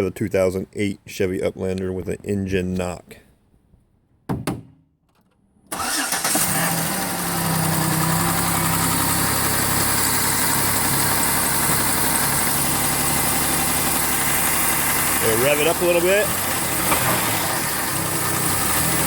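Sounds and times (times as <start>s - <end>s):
car engine starting and idling: 5.5s - 19.0s
engine knock and clunk: 6.4s - 15.2s, 16.1s - 19.0s.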